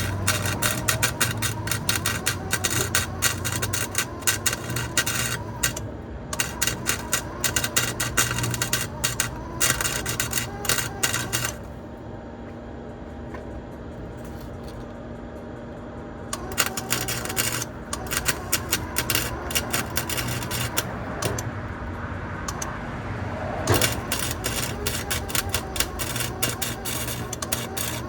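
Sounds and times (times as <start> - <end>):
welder crackling: 0.0 - 11.8, 16.3 - 21.8, 22.4 - 22.9, 23.6 - 28.0.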